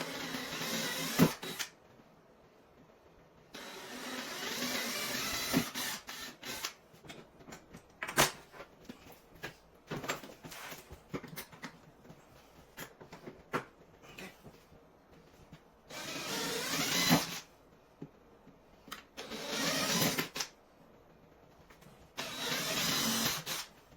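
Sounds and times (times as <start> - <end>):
tools and wood clicking and knocking: 6.6 - 13.8.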